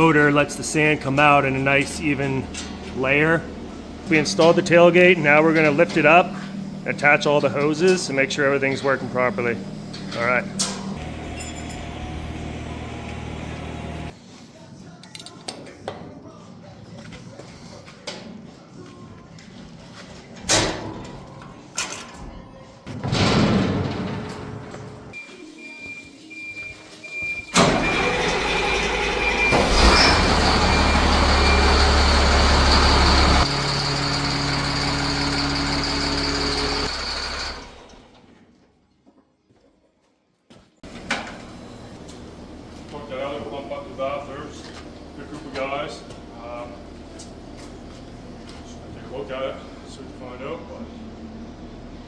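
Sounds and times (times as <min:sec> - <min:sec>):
steady machine hum: 0:00.0 - 0:14.1.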